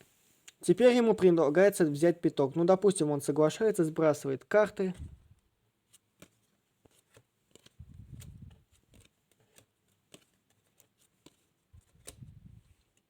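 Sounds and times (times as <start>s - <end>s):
soft card rustles: 4.6s - 13.0s
playing cards clicking on table: 6.2s - 7.8s, 8.9s - 12.2s.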